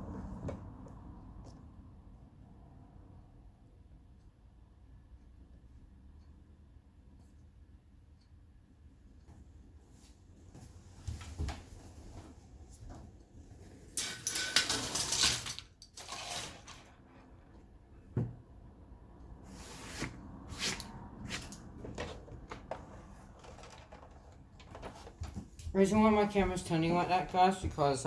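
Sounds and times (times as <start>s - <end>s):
plastic parts and tools clattering: 13.9s - 17.3s, 21.4s - 25.6s
scraping and rustling: 13.9s - 17.4s, 19.5s - 25.6s.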